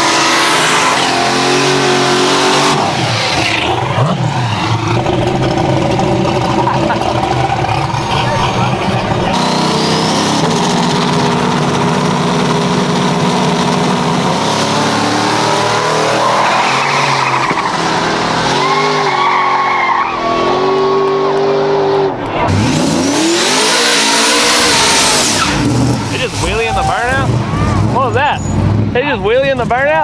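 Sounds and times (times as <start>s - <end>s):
engine at high revs: 0.0s - 29.0s
tyres squealing: 23.7s - 28.7s.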